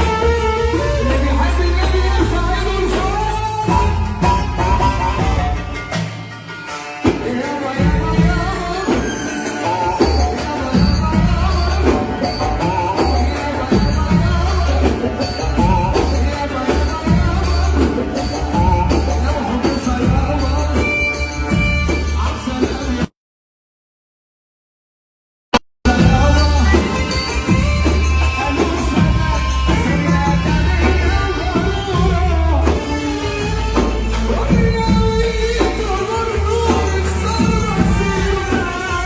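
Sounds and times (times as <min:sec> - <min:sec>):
heavy bass pulses: 0:00.0 - 0:05.8, 0:25.9 - 0:39.0.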